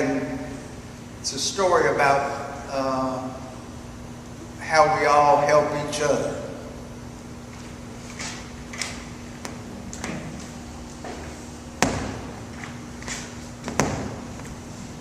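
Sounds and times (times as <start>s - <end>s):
low steady hum: 0.0s - 15.0s
sharp knocks: 11.8s - 12.4s, 13.6s - 14.2s.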